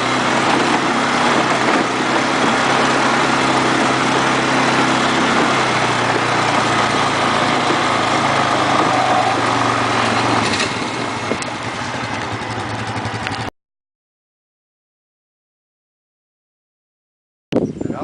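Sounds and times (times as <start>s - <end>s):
atv engine idling: 0.0s - 13.5s.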